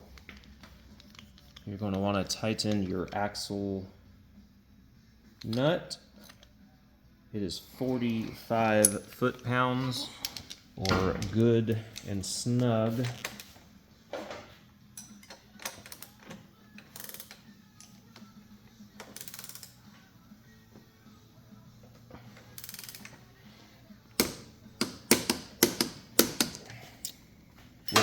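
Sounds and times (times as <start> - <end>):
ratchet wrench clicking: 15.0 - 16.2, 16.8 - 18.0, 19.0 - 19.8, 22.6 - 23.2, 24.2 - 27.2.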